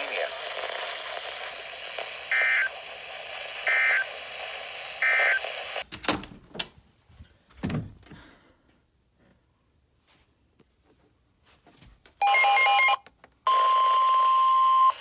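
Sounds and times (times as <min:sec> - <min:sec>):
radio hiss: 0:00.0 - 0:05.8.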